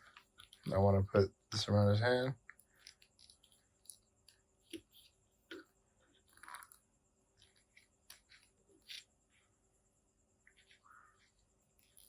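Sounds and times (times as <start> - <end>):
rustle of plastic parts: 2.6 - 5.1.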